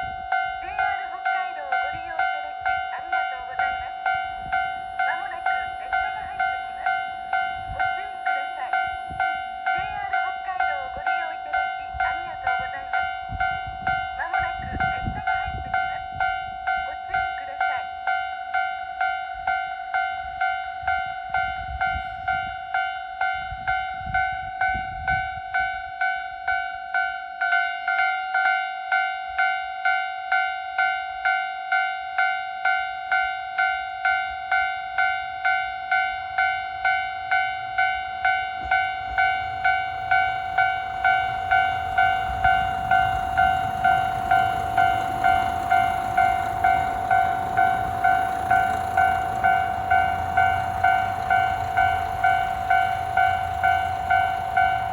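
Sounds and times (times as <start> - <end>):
diesel train rumble: 0.0 - 18.1, 32.6 - 54.9
level crossing warning bell: 0.0 - 54.9.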